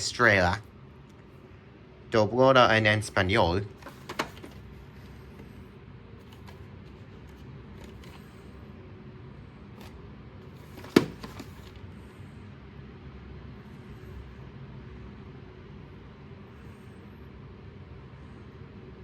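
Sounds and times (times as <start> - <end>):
steady low hum: 0.0 - 19.0
tape case clicks and rustles: 3.8 - 4.7, 6.2 - 8.2.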